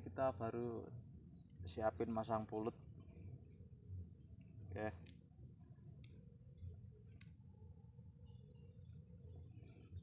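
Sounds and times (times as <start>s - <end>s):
faint bird chirps: 0.0s - 10.0s
faint clicks: 6.0s - 6.3s.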